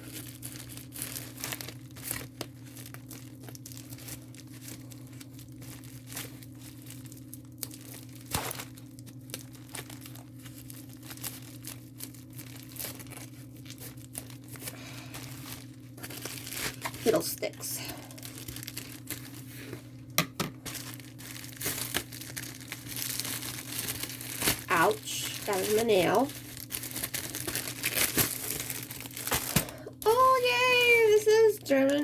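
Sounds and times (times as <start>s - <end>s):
packaging crinkling and tearing: 0.0s - 20.0s, 20.6s - 32.0s.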